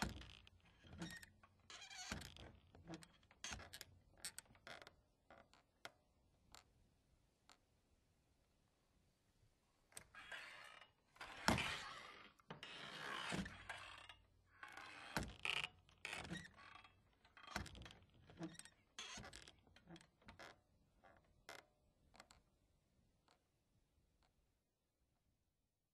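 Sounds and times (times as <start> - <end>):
door hinges creaking: 0.0 - 4.9, 10.0 - 20.6.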